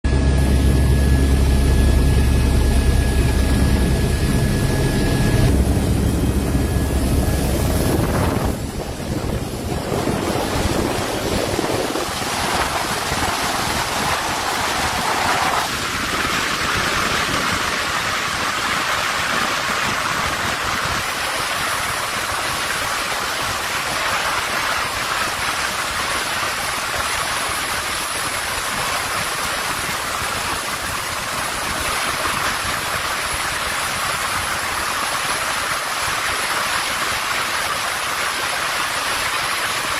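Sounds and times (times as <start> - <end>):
rushing hissing noise: 8.0 - 19.8.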